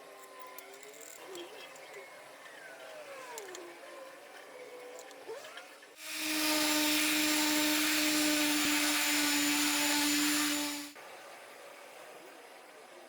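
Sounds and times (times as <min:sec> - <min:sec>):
power tool motor whining: 0:06.0 - 0:11.0.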